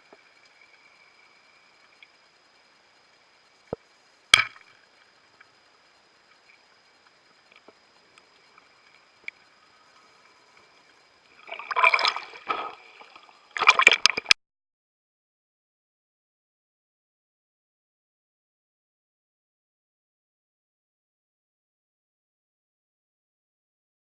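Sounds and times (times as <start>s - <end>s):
bubbling and gurgling water: 7.3s - 14.4s
sharp underwater clicks: 11.3s - 14.4s.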